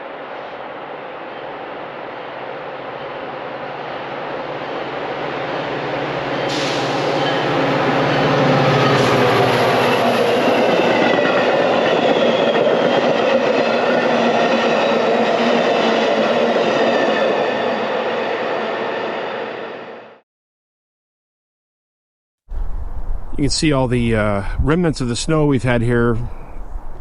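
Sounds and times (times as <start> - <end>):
train wheels rumbling on rail: 0.1 - 19.0
wheels and brakes squealing: 6.2 - 19.4.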